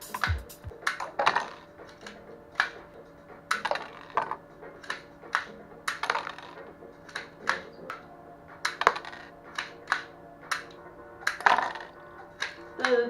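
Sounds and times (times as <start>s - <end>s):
faint music: 0.0s - 13.0s.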